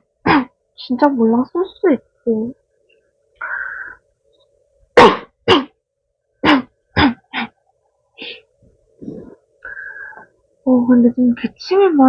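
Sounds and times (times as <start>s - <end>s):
soft breaths: 3.0s - 4.4s, 7.3s - 10.6s
woman coughing: 5.0s - 5.8s, 6.4s - 7.6s.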